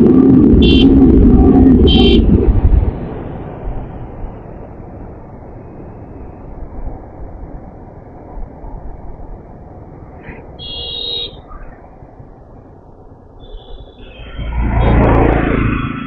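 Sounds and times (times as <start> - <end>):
motorcycle road rumble: 0.0 - 16.0
wind noise: 0.0 - 16.0
vehicle horn: 0.5 - 1.2, 1.8 - 2.4, 10.6 - 11.6, 13.4 - 15.4.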